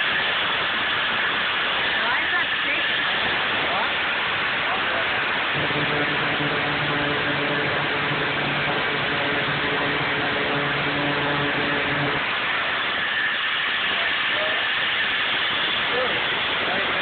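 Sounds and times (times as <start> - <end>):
low motor hum: 5.0 - 16.8
angle grinder cutting metal: 5.5 - 17.0.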